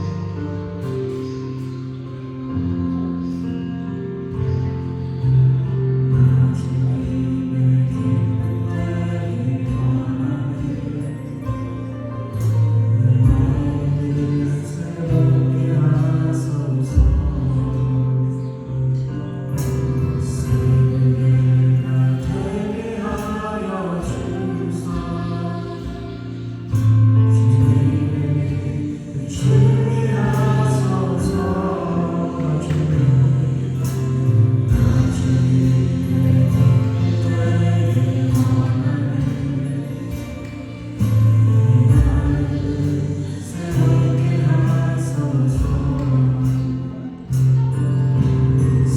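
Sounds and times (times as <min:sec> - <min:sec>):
acoustic guitar: 0:00.0 - 0:48.9
bass line: 0:00.0 - 0:48.9
keyboards: 0:00.0 - 0:48.9
voices singing together: 0:05.3 - 0:48.9
drums: 0:33.8 - 0:37.6, 0:45.6 - 0:48.9.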